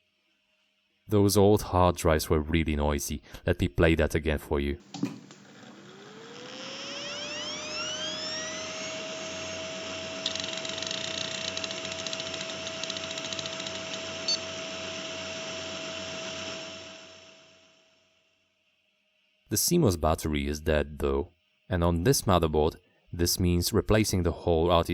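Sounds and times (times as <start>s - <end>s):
hard drive whine: 4.8s - 17.8s
hard drive seek clicking: 7.2s - 16.6s.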